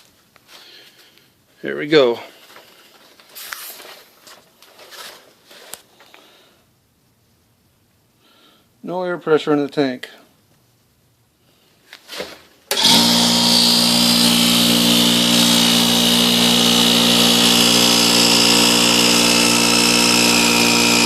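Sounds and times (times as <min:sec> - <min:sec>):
air compressor running: 0:12.7 - 0:21.0.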